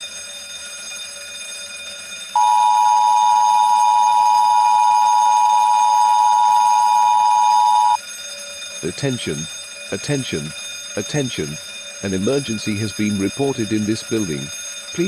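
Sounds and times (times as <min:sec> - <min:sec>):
electric fire bell ringing: 0:00.0 - 0:15.0
electronic alert tone: 0:02.4 - 0:08.0.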